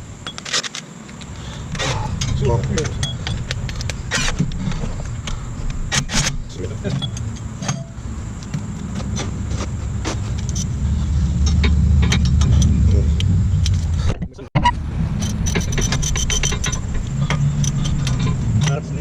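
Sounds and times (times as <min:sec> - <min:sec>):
steady low hum: 0:00.0 - 0:19.0
metal tools clinking: 0:15.2 - 0:18.9.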